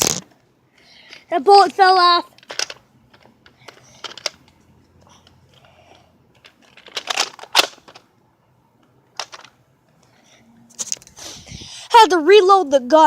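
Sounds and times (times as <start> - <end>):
toy blaster plastic clicks and rattles: 1.1 - 4.5, 6.4 - 8.0.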